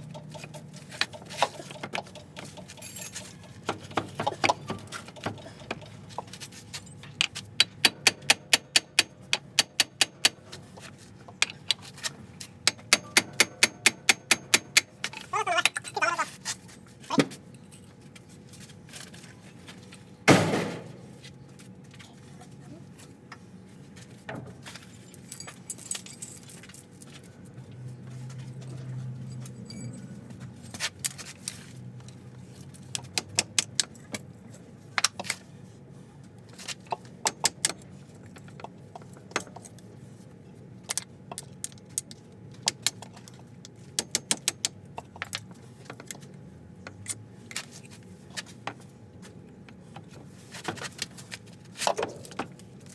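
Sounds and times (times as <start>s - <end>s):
metal tools clinking: 0.1s - 6.0s, 29.3s - 30.2s.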